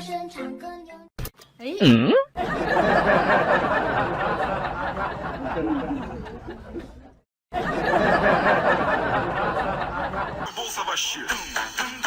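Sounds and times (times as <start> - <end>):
chuckling laughter: 2.4 - 10.5.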